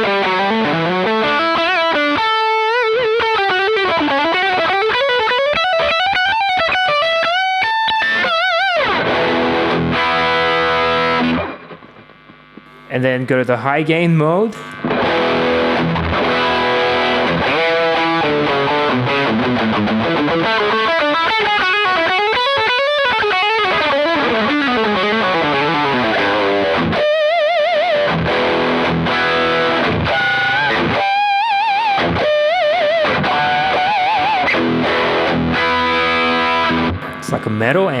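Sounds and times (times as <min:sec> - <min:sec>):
distorted electric guitar: 0:00.0 - 0:38.0.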